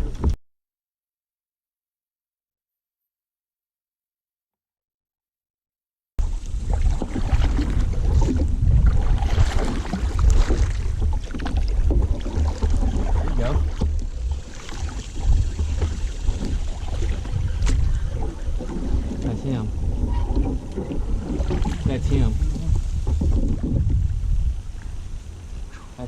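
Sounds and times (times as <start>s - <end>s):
knocks and splashes around kayak: 0.0s - 0.4s, 6.2s - 25.8s
wind rumbling on microphone: 6.2s - 26.0s.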